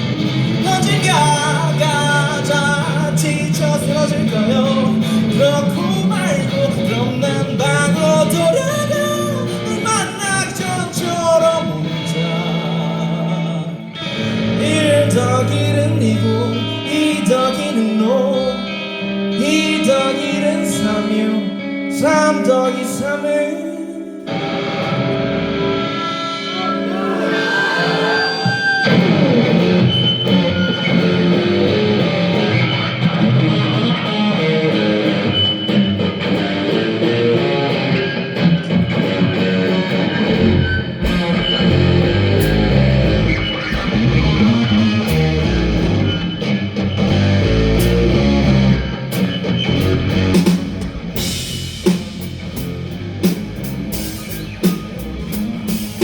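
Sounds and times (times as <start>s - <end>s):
rock band playing: 0.0s - 23.4s, 24.2s - 56.0s
electric guitar: 0.0s - 56.0s
drums beating steadily: 40.9s - 46.1s, 47.8s - 56.0s.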